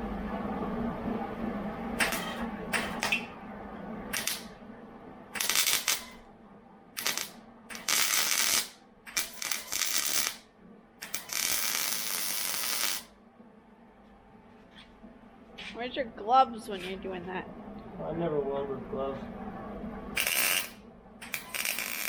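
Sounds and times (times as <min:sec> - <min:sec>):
electric arc welding hiss: 0:04.2 - 0:04.5, 0:05.4 - 0:06.2, 0:07.0 - 0:10.4, 0:11.1 - 0:13.1, 0:20.2 - 0:22.0.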